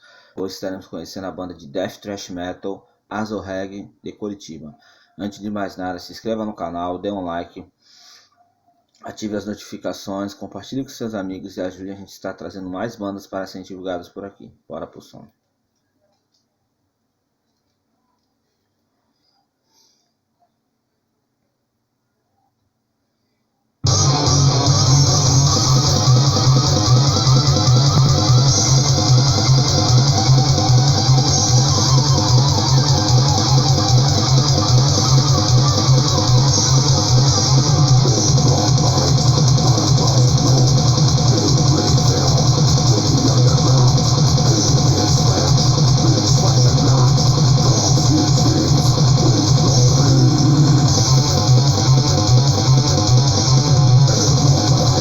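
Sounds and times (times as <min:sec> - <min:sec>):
bass guitar: 0:23.8 - 0:55.0
distorted electric guitars: 0:23.8 - 0:55.0
fast pounding drums: 0:23.9 - 0:55.0.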